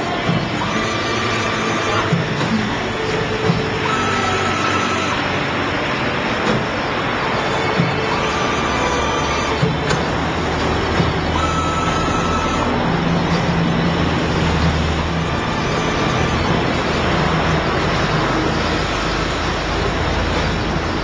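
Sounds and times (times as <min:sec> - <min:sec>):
cnc machine running: 0:00.0 - 0:21.0.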